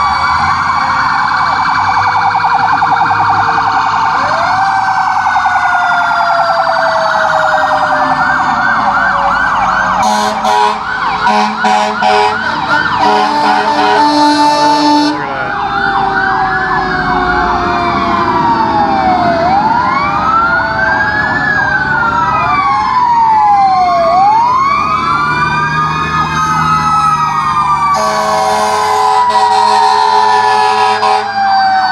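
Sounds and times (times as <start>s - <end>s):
fire truck sirens: 0.0s - 31.9s
loud horn blasts: 10.0s - 15.5s, 27.9s - 31.4s.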